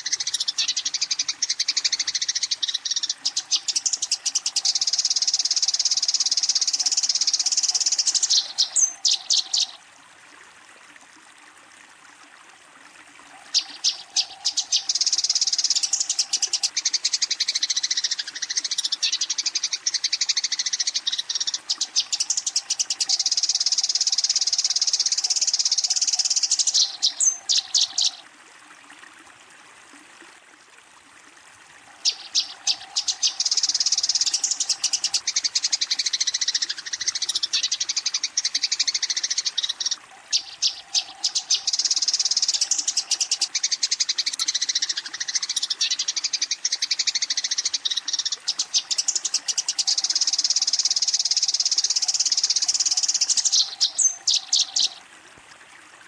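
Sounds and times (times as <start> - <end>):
sparrows chirping rapidly: 32.1 - 46.4.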